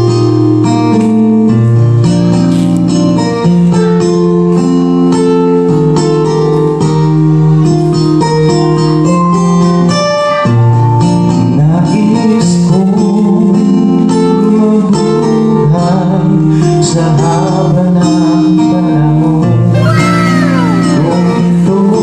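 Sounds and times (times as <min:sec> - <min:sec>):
slow ballad with guitar: 0:00.0 - 0:22.0.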